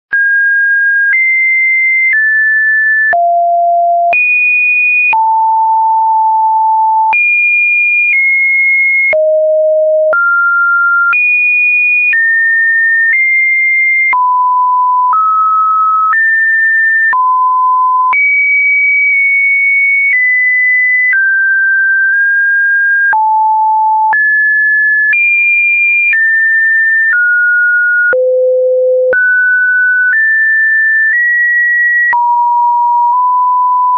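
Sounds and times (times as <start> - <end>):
sine test tone beeps: 3.1 - 4.2, 8.2 - 11.2, 23.2 - 24.2, 28.0 - 29.6, 32.1 - 33.9.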